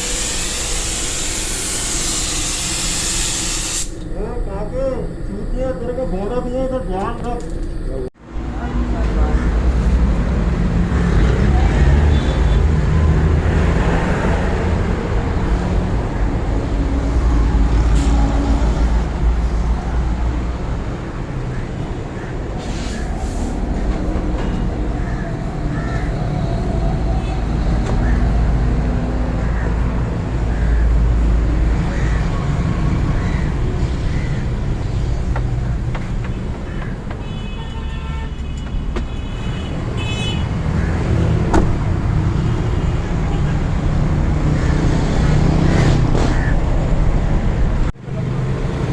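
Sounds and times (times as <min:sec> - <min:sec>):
vehicle engine rumbling: 0:03.8 - 0:37.6.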